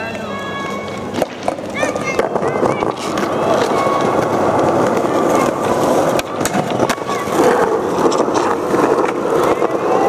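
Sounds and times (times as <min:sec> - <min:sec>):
skateboard wheels rolling: 0:00.0 - 0:10.0.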